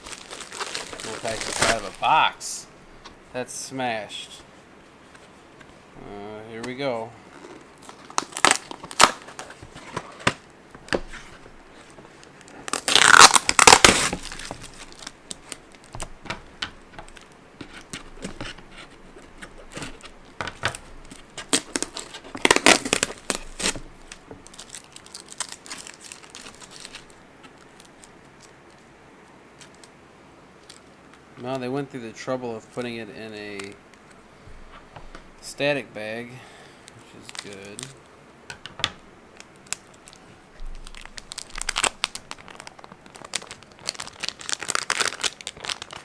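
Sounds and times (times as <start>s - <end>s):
packaging tearing and crinkling: 0.0s - 2.3s, 7.4s - 28.8s, 37.2s - 38.0s, 39.4s - 46.0s.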